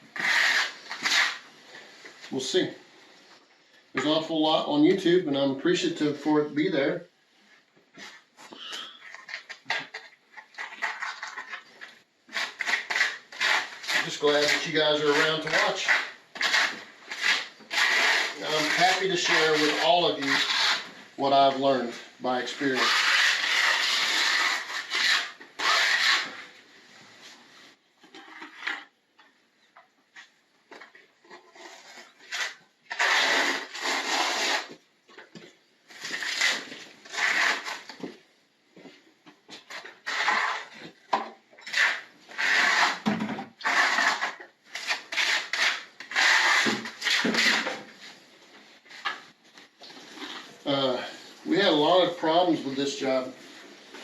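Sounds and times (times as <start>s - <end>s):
rough rasping scraping: 0.1s - 1.5s, 10.5s - 21.0s, 22.5s - 26.5s, 35.9s - 38.0s, 41.6s - 47.8s.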